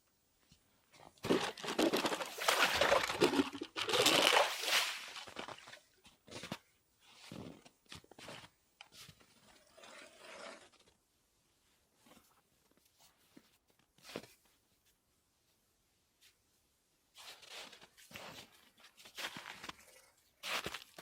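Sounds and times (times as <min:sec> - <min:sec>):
footsteps crunching on snow: 0:18.1 - 0:21.0.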